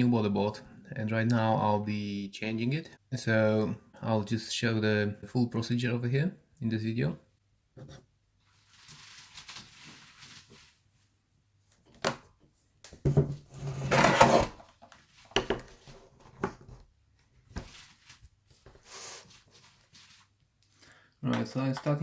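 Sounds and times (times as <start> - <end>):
laptop scraping on surface: 13.5 - 14.6.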